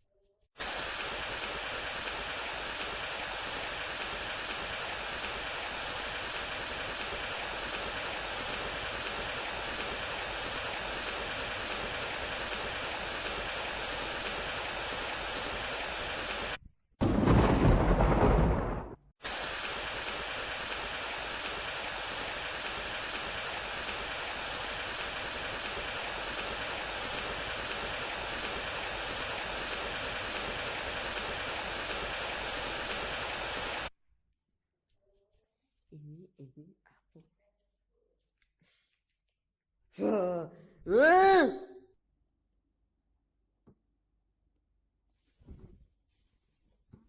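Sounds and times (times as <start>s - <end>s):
steady rain: 0.6s - 33.9s, 40.9s - 41.5s
thunder: 17.0s - 19.4s.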